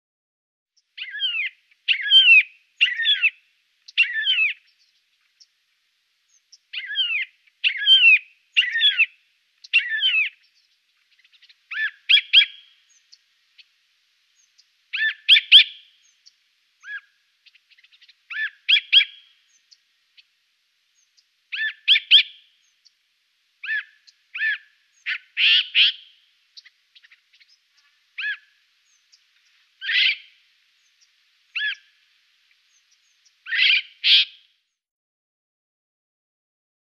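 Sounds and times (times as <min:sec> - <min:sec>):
jay calling: 0:01.0 - 0:03.4, 0:06.8 - 0:09.1, 0:09.7 - 0:10.4, 0:14.9 - 0:15.8, 0:18.3 - 0:19.3, 0:21.5 - 0:22.4, 0:23.6 - 0:26.1, 0:27.8 - 0:28.5, 0:29.8 - 0:30.3, 0:31.6 - 0:31.9, 0:33.5 - 0:34.4.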